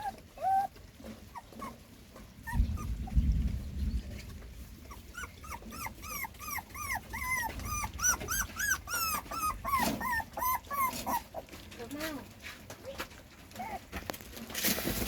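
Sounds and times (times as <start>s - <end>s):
puppy whimpering: 0.0s - 3.2s, 4.8s - 12.0s, 13.5s - 14.1s.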